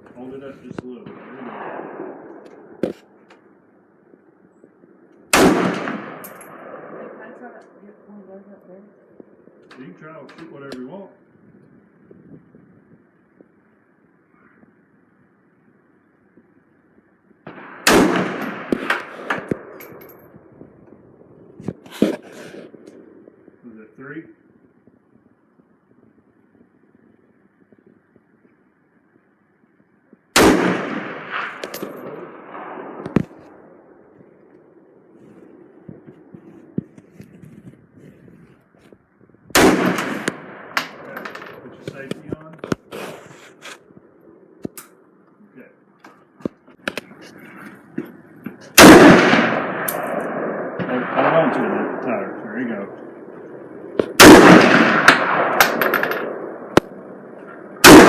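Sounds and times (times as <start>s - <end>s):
loud echoing gunshot: 1.0s - 2.9s, 5.3s - 7.6s, 17.5s - 19.8s, 30.3s - 34.1s, 39.5s - 42.2s, 48.7s - 58.0s.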